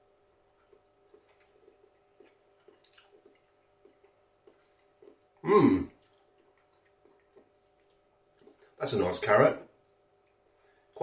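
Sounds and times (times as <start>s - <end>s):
faint hum: 0.0s - 11.0s
person chewing food: 0.2s - 8.8s.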